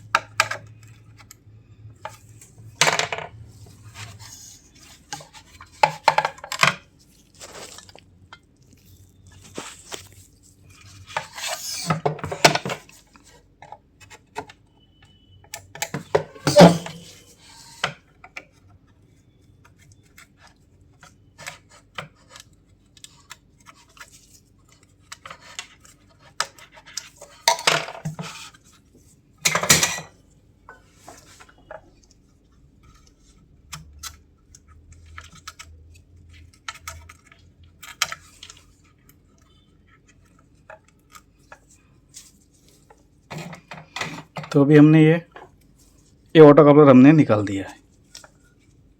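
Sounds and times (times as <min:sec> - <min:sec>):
metal tools scraping circuit board: 0:11.2 - 0:12.0, 0:16.3 - 0:17.8.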